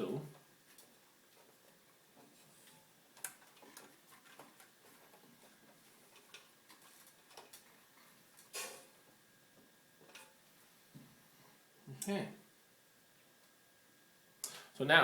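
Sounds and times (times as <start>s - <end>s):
small parts clicking and tapping: 2.2s - 7.8s.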